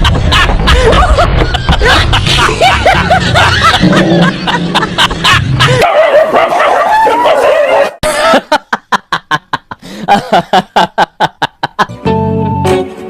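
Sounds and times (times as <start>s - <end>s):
quick regular laughs: 0.0s - 6.2s
high wavering laugh: 0.0s - 7.2s, 8.0s - 11.9s
music: 11.8s - 13.0s.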